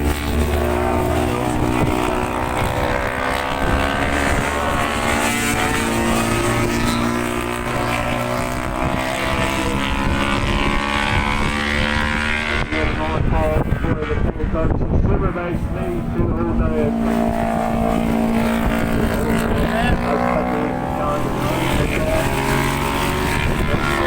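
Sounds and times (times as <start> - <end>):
racing motorcycle engines revving: 0.0 - 24.0.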